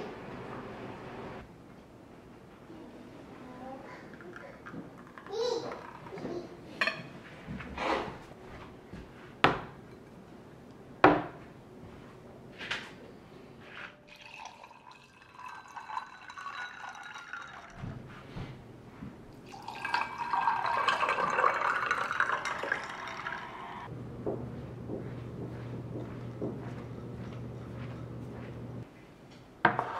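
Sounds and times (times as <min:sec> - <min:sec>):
liquid pouring into glass: 0:14.1 - 0:17.8, 0:19.5 - 0:23.9
glass clinking: 0:14.1 - 0:17.9, 0:19.5 - 0:23.5.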